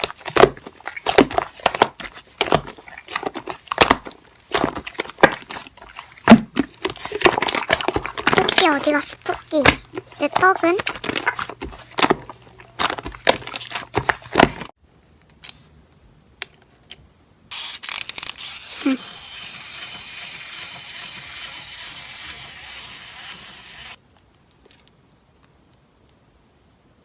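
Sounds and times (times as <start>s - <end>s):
loud hissing crackle: 18.6s - 24.0s.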